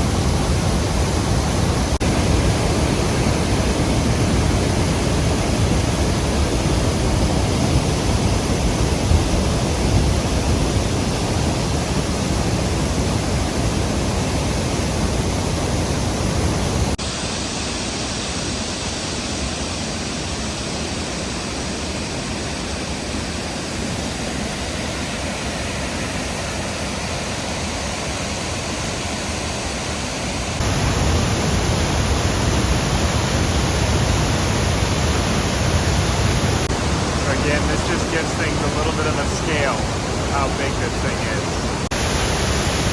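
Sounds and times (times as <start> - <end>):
waterfall rushing: 30.2 - 42.9.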